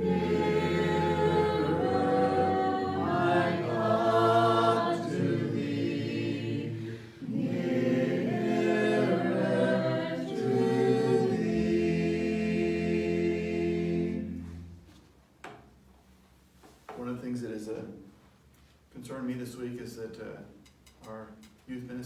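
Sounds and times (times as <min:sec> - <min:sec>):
group singing a hymn a cappella: 0:00.0 - 0:15.0.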